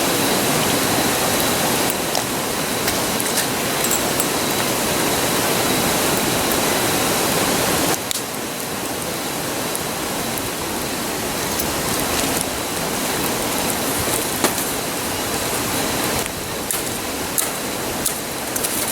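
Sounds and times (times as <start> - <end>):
river rushing: 0.0 - 18.8
campfire crackling: 0.0 - 18.9.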